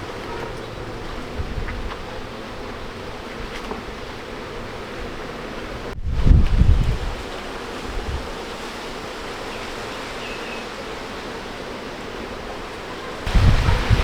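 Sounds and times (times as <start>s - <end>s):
wind buffeting microphone: 0.0s - 8.5s, 13.2s - 14.0s
wind blowing: 0.0s - 14.0s.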